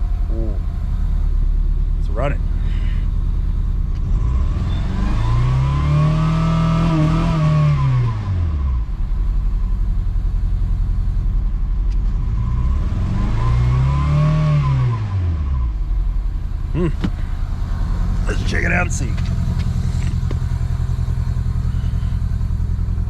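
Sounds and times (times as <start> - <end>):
car engine revving: 0.0 - 11.0, 12.0 - 23.0.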